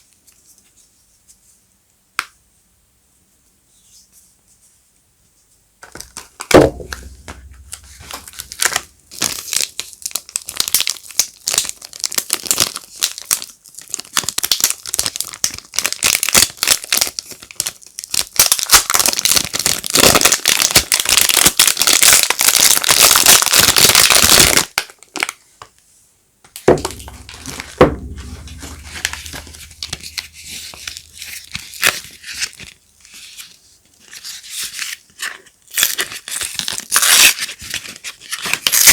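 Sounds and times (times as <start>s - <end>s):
soap wrapping crinkling and tearing: 5.9s - 25.4s, 26.8s - 38.9s
dull knocks: 6.6s - 8.8s, 26.7s - 31.0s.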